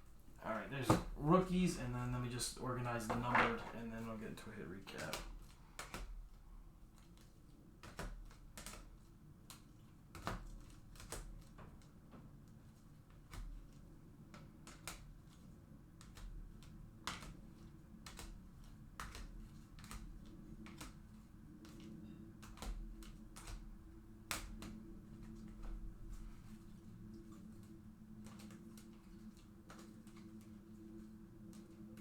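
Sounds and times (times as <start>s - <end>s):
low steady hum: 0.0s - 8.4s
trading cards clicking on table: 2.9s - 11.9s, 13.1s - 32.0s.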